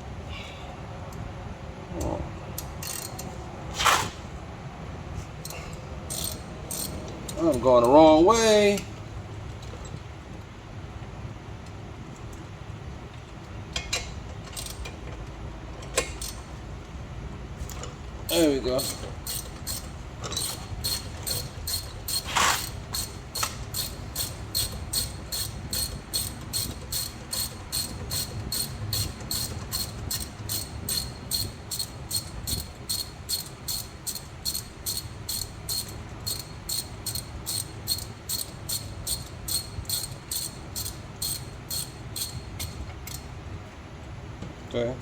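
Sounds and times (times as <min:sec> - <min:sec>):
ratchet wrench clicking: 0:02.6 - 0:03.3, 0:05.4 - 0:07.6, 0:14.5 - 0:14.9, 0:16.0 - 0:16.5, 0:18.3 - 0:43.3.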